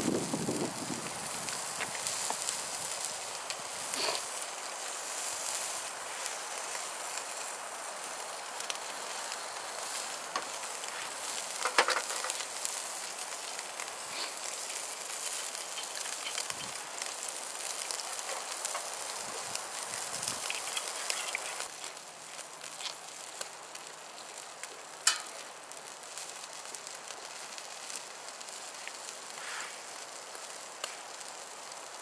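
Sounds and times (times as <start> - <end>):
campfire crackling and popping: 0.0 - 32.0.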